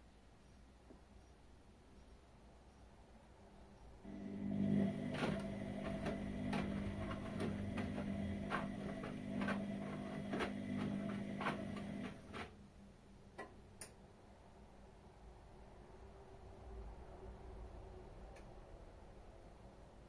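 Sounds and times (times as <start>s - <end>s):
washing machine hum: 4.0s - 12.6s.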